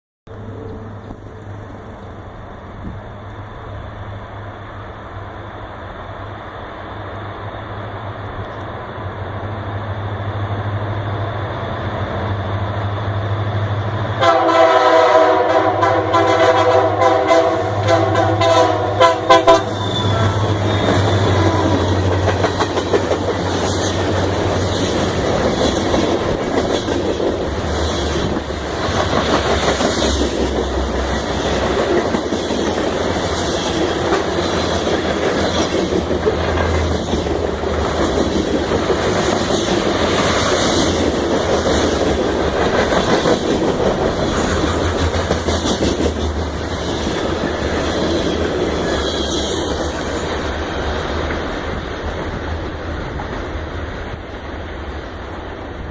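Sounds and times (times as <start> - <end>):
diesel locomotive rumble: 0.3 - 55.9
locomotive air horn: 14.2 - 22.0
train cars clattering on rails: 14.2 - 55.9.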